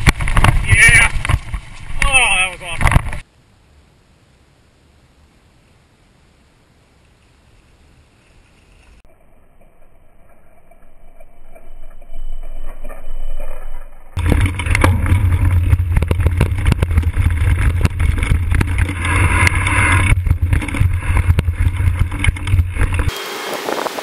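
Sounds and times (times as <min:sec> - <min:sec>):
bike clicking and rattling: 0:00.0 - 0:02.0, 0:13.4 - 0:24.0
wind buffeting microphone: 0:20.1 - 0:24.0.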